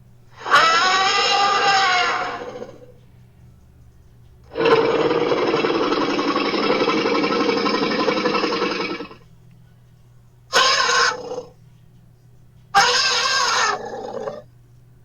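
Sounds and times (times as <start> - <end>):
rough pulsing animal growl: 0.4 - 3.0, 4.5 - 9.2, 13.6 - 14.4.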